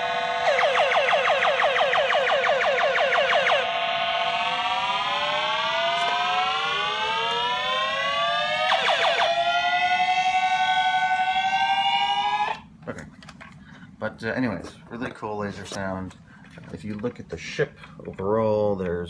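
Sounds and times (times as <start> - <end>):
toy spaceship siren-like tone: 0.0 - 12.6.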